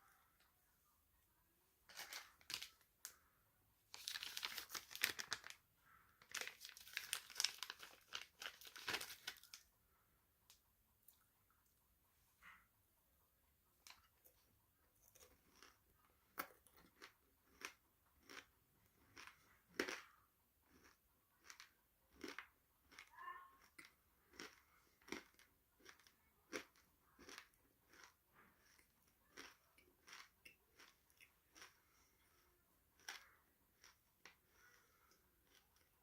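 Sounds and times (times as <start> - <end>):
person chewing crunchy food: 4.0 - 5.6, 6.2 - 9.6, 15.0 - 36.0.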